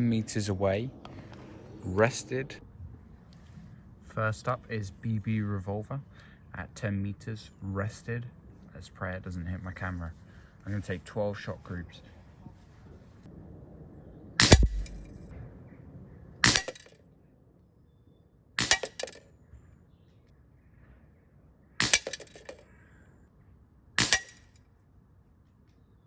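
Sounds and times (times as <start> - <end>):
air pistol cracks: 14.4 - 15.2, 16.4 - 16.9, 18.6 - 19.2, 21.8 - 22.6, 24.0 - 24.5.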